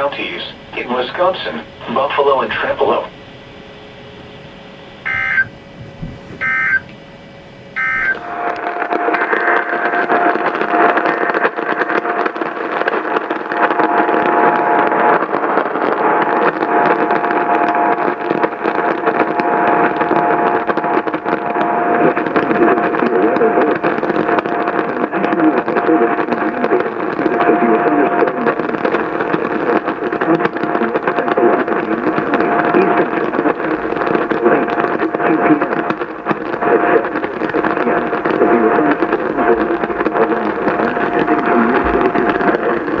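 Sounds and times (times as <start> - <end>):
faint steady hum: 0.0 - 43.0
steady hiss with constant tone: 0.0 - 43.0
buzzy digital data tones: 4.9 - 5.8, 6.4 - 12.2.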